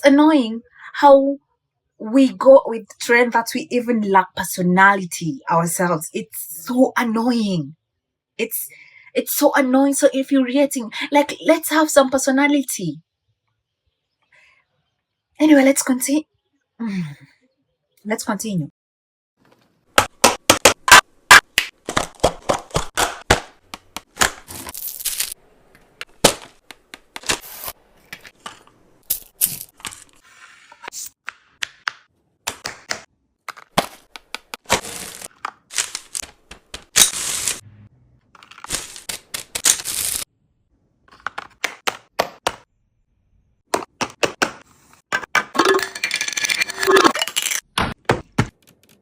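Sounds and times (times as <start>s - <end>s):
snack packets crinkling: 33.5s - 37.6s, 38.4s - 40.2s
containers clicking and knocking: 45.2s - 47.6s.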